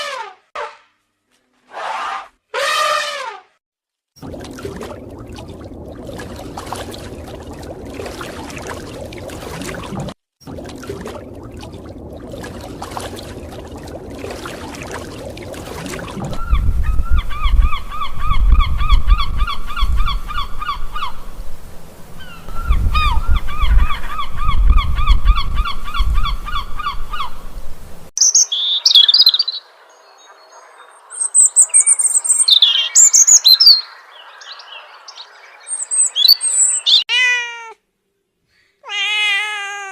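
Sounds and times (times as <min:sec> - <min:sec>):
high-pitched bird chirps and squawks: 0:28.2 - 0:29.6, 0:35.8 - 0:37.8.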